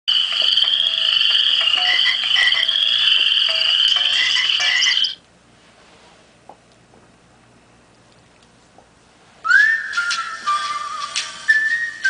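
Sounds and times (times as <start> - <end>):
phone ringtone: 0.1 - 5.2.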